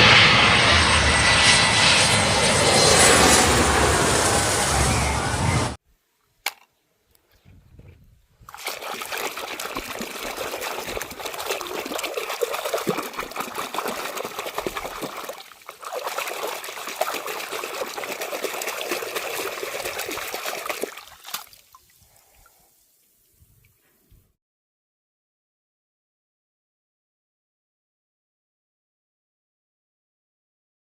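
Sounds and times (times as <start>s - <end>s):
water running and splashing: 8.5s - 22.0s.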